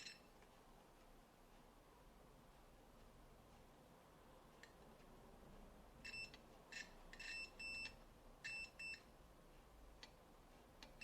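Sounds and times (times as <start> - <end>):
multimeter continuity beeps: 6.0 - 9.1.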